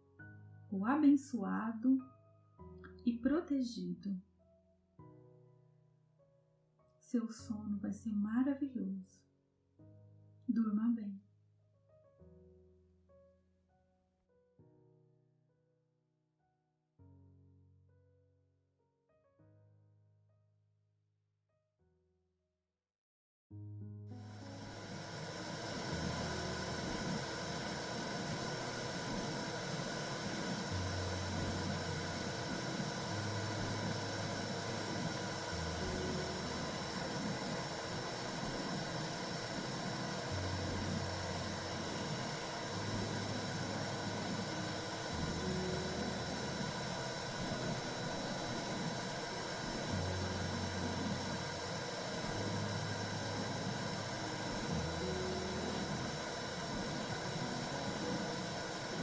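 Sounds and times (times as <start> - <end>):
low stepping hum: 24.2 - 59.0
whooshing white noise: 24.2 - 59.0.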